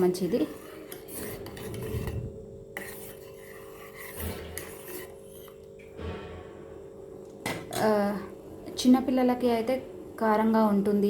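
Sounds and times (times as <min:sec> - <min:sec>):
spoon scraping a cooking pot: 0:00.0 - 0:05.9
steady hum: 0:00.0 - 0:11.0.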